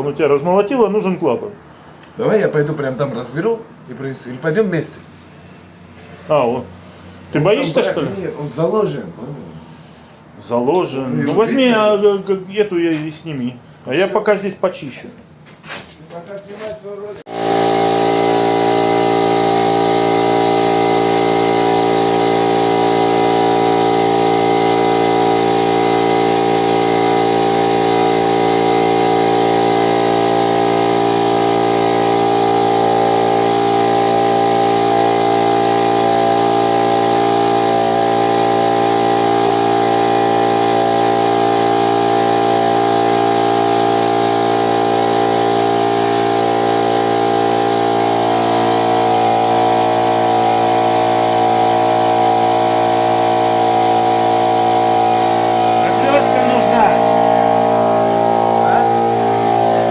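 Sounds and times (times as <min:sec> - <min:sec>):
piston air compressor running: 0:05.1 - 0:08.9, 0:17.3 - 0:59.9.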